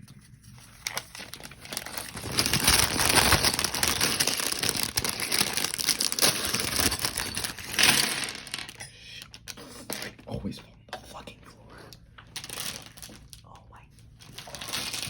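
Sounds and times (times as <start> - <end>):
plastic bag crinkling: 0.5 - 10.1, 12.2 - 13.4, 14.2 - 15.0
plastic pieces clicking: 2.7 - 10.1.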